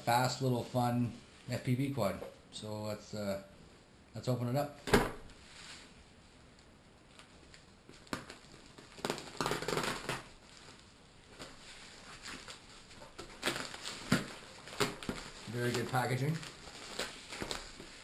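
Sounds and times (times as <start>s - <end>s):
packaging rustling and scraping: 7.2s - 18.0s.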